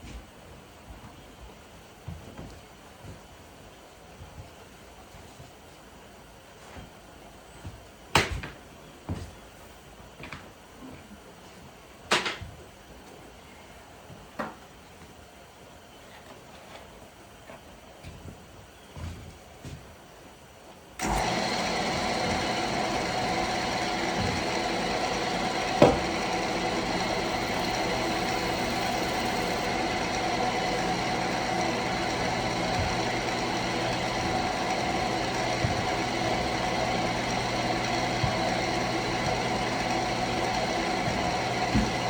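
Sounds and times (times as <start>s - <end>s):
wood lathe motor hum: 21.0s - 42.0s.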